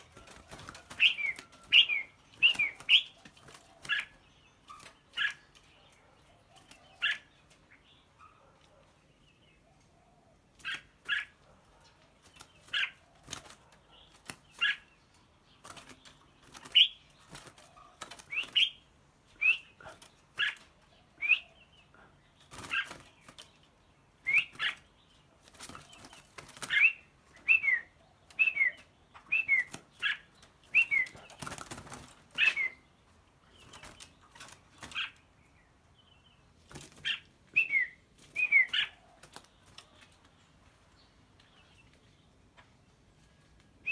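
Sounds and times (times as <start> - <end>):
wings fluttering: 0.0 - 5.6, 12.2 - 14.8, 15.6 - 18.8, 22.4 - 23.6, 25.4 - 32.8, 33.5 - 35.2
songbirds whistling: 0.0 - 7.3, 15.6 - 21.8, 24.2 - 25.0, 25.6 - 35.3, 37.0 - 39.8.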